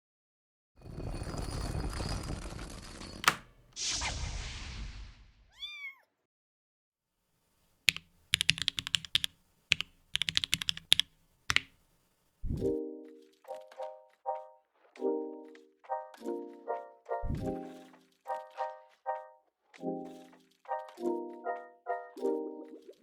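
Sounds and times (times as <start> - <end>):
mechanical keyboard typing: 3.2 - 3.5, 7.9 - 11.7
sharp click: 3.2 - 3.5
cat meowing: 5.5 - 6.1.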